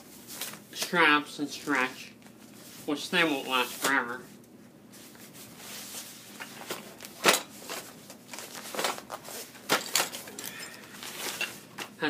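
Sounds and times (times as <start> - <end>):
vinyl tool roll rustling: 0.0 - 12.0
tools clacking and knocking: 9.7 - 10.6.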